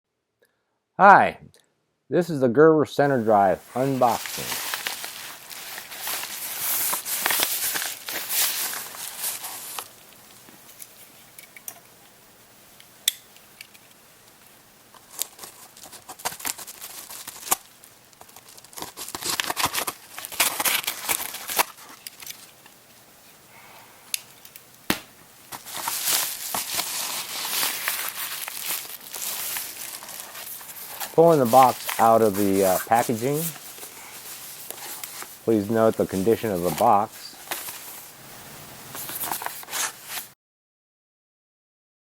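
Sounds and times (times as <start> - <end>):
packaging tearing and crinkling: 3.7 - 11.0, 14.9 - 22.8, 24.2 - 38.2, 38.9 - 40.3.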